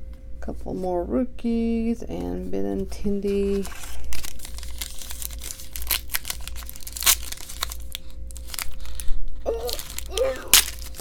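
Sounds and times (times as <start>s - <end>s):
foil wrapper crinkling and tearing: 3.4s - 11.0s
person humming: 9.4s - 10.7s.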